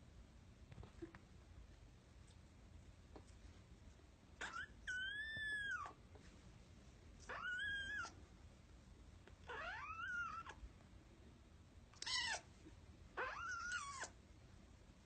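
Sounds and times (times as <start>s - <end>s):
cat meowing: 7.3s - 8.2s, 9.4s - 10.6s, 12.0s - 12.5s, 13.2s - 14.1s.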